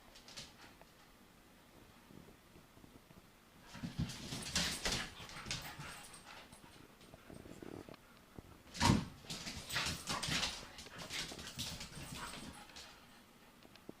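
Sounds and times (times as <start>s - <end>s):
puppies playing: 3.7s - 8.1s, 8.7s - 13.6s.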